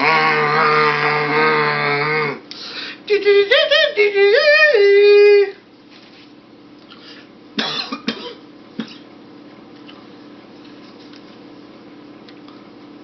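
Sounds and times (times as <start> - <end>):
person's high wavering cry: 0.0 - 2.4.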